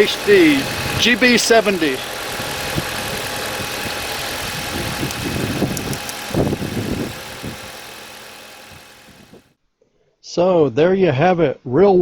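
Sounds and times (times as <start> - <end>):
vehicle engine idling: 0.0 - 9.6.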